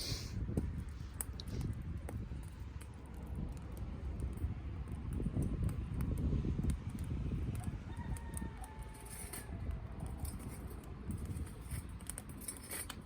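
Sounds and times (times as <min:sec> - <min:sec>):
fire crackles and pops: 0:00.0 - 0:13.0
wood fire rumbling in stove: 0:00.0 - 0:13.0
distant rooster crow: 0:07.6 - 0:09.8.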